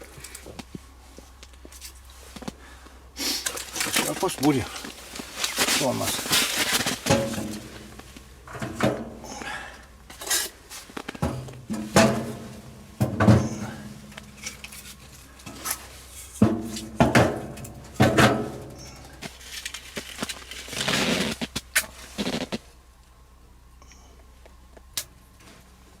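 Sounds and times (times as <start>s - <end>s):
metal stove clanks and knocks: 7.0s - 7.9s, 8.5s - 9.3s, 11.2s - 15.8s, 16.4s - 18.9s.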